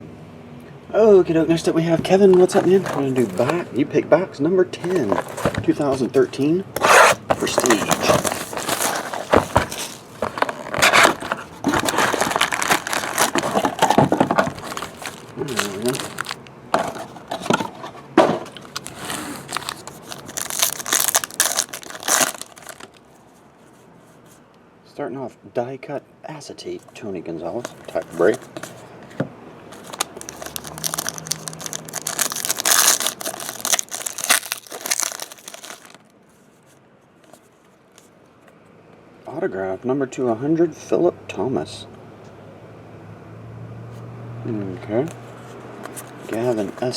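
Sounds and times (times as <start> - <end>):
plastic wrapping crinkling: 2.0 - 3.6, 4.8 - 6.1, 6.8 - 17.8, 18.4 - 23.1, 27.6 - 28.8, 29.7 - 36.1.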